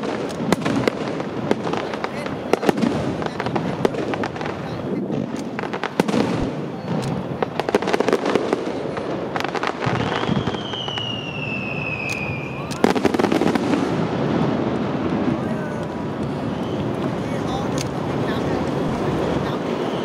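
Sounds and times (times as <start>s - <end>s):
fireworks bangs and crackling: 0.0s - 20.0s
descending firework whistle: 9.6s - 14.2s, 16.0s - 17.7s, 19.2s - 20.0s.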